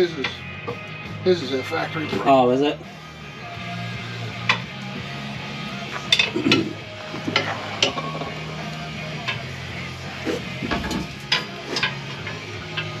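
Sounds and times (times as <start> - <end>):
background music: 0.0 - 13.0.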